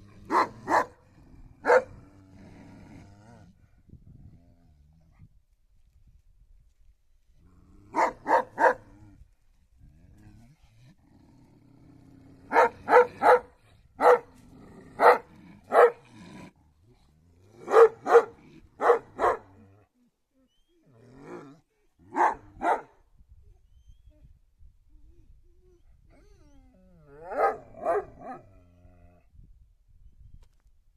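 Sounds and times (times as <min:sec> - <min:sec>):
dog barking: 0:00.3 - 0:01.0, 0:01.6 - 0:02.0, 0:08.0 - 0:08.8, 0:12.5 - 0:14.3, 0:15.0 - 0:16.0, 0:17.6 - 0:19.5, 0:22.1 - 0:22.9, 0:27.3 - 0:28.4.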